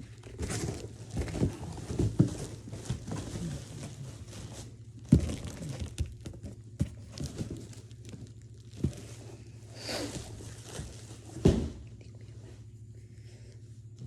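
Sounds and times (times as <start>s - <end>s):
packaging crinkling and tearing: 0.3s - 9.2s.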